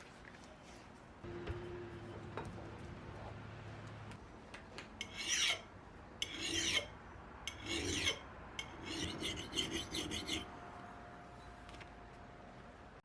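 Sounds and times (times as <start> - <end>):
hand file rasping: 5.0 - 5.6, 6.2 - 6.9, 7.5 - 10.5.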